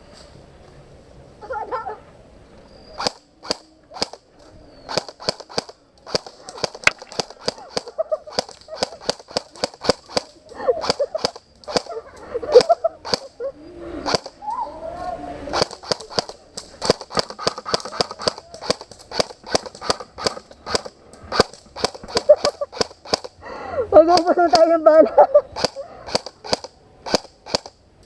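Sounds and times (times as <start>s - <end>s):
airsoft gun shots: 3.0s - 4.2s, 4.9s - 11.9s, 15.5s - 23.3s, 25.5s - 27.8s.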